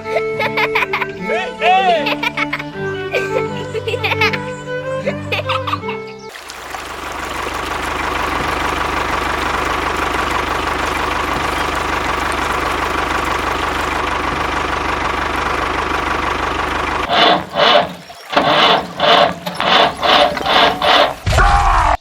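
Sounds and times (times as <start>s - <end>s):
small engine running: 6.3s - 21.3s.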